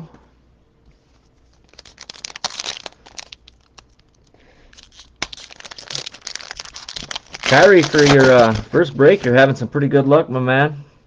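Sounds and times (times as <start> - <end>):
foil wrapper crinkling and tearing: 1.4 - 9.5.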